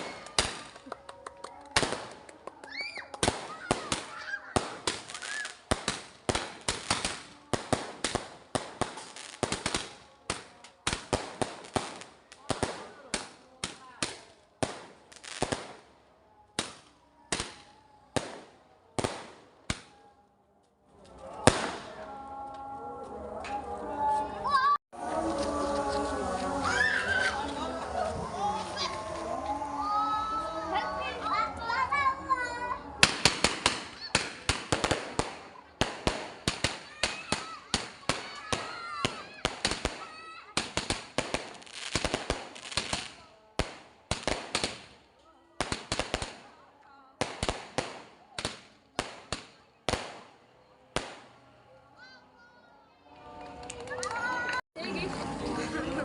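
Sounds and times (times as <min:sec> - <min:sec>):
fireworks bangs: 0:00.0 - 0:15.9, 0:16.5 - 0:20.0, 0:21.4 - 0:22.1, 0:33.0 - 0:45.0, 0:45.6 - 0:46.6, 0:47.2 - 0:51.5.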